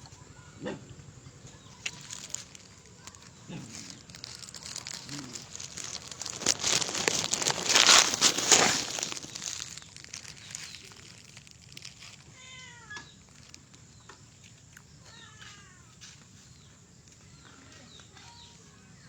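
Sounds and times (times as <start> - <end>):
faint background noise: 0.0 - 19.0.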